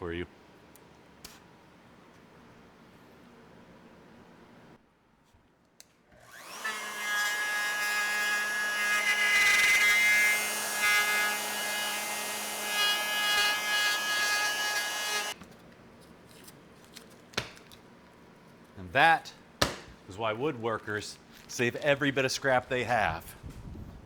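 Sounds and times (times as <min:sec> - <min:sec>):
wood router whining and cutting: 0:06.2 - 0:15.4.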